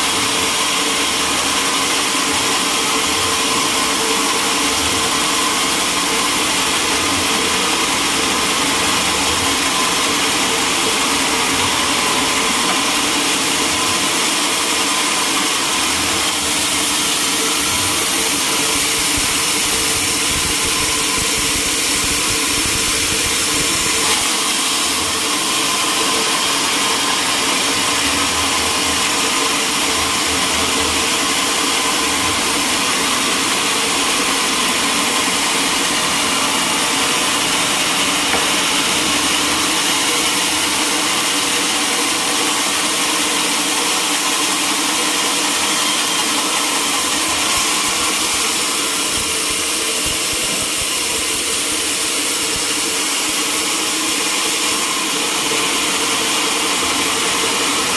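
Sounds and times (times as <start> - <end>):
sawmill machinery drone: 0.0 - 57.9.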